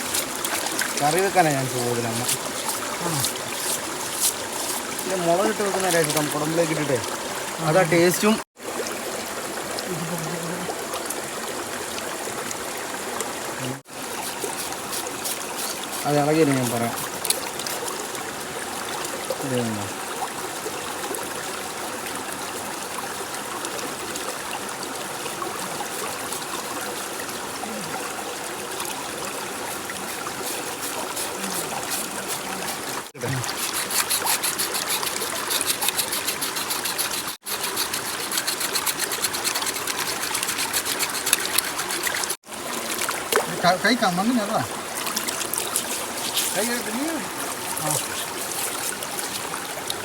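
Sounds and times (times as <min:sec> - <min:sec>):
water trickling: 0:00.0 - 0:50.0
rapid scratchy rubbing: 0:01.0 - 0:06.4, 0:14.2 - 0:17.8, 0:29.7 - 0:42.4, 0:45.7 - 0:49.5.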